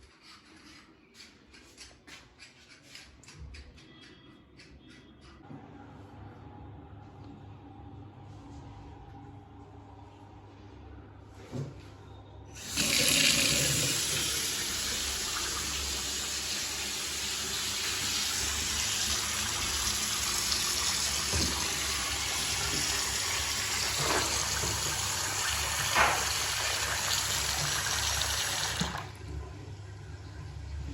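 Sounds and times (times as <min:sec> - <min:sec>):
tap water running into basin: 0:12.6 - 0:29.3.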